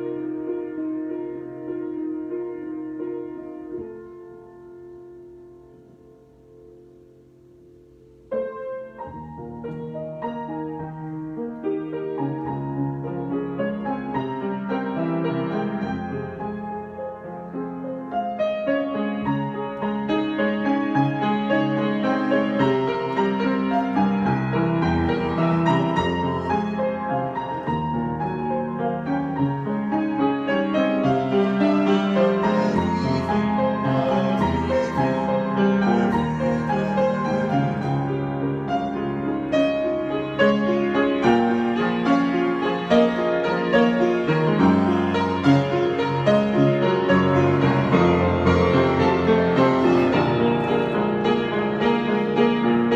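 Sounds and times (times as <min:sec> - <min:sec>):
solo piano: 0:00.0 - 0:52.9.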